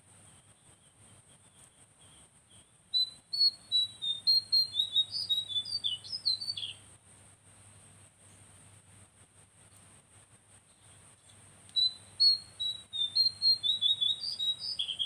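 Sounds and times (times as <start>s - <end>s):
faint thin bird notes: 0.2s - 6.9s.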